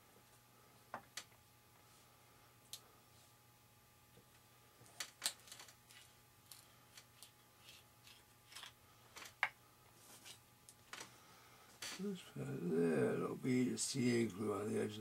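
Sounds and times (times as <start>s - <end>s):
hands handling small parts: 4.9s - 11.1s.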